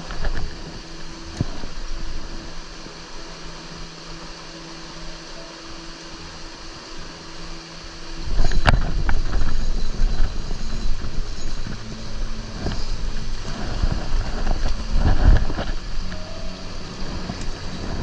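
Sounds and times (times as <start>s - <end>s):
rushing creek water: 0.0s - 18.0s
wind buffeting microphone: 8.2s - 18.0s.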